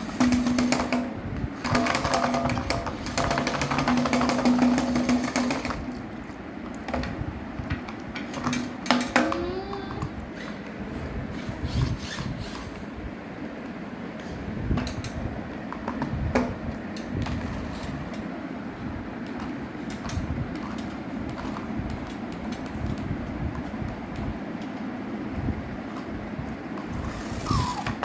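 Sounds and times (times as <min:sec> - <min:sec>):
plastic toys clicking and knocking: 0:00.0 - 0:06.0, 0:06.7 - 0:10.1
toy motor buzzing: 0:27.0 - 0:28.0.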